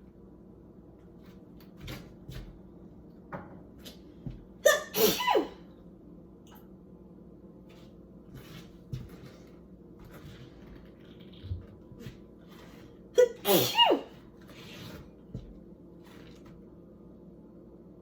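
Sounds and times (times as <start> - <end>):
person sneezing: 4.6 - 5.7, 13.2 - 14.2.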